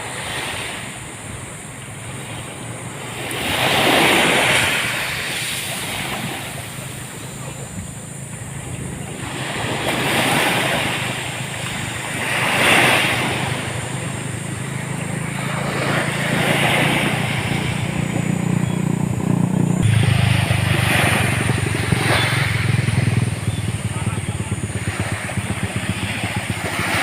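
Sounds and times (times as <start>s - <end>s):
sea waves breaking on beach: 0.0s - 27.0s
steady low rumble: 13.3s - 27.0s.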